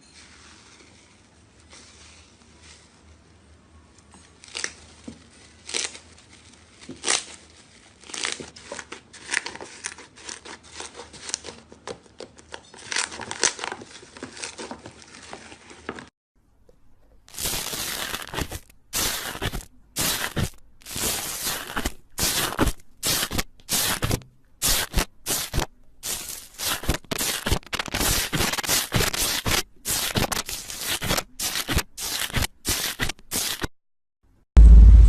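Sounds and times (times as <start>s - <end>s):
slime squeezed and stretched: 17.3s - 33.6s.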